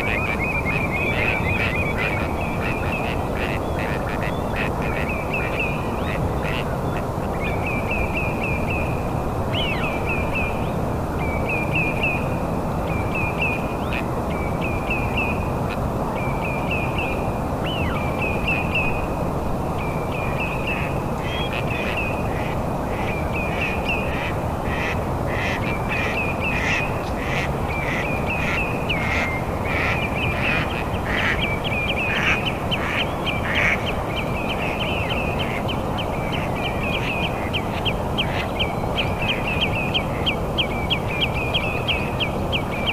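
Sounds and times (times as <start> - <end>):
birds chirping: 0.0 - 42.9.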